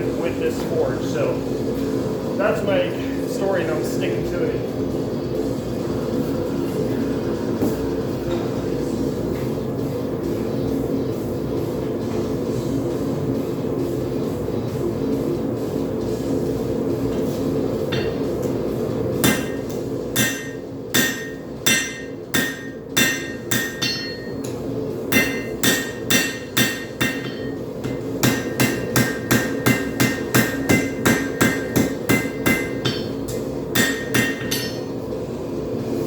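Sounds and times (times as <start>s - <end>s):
hammer ringing on anvil: 17.9s - 18.2s, 19.2s - 34.9s.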